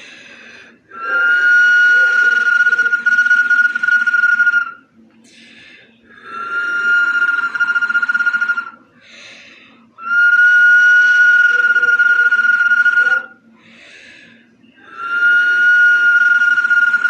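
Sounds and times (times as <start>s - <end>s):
short breath: 0.0s - 0.8s, 5.2s - 6.5s, 9.0s - 9.9s, 13.6s - 15.0s
whistling bottle notes: 0.9s - 4.8s, 6.5s - 8.8s, 10.0s - 13.3s, 15.0s - 17.0s.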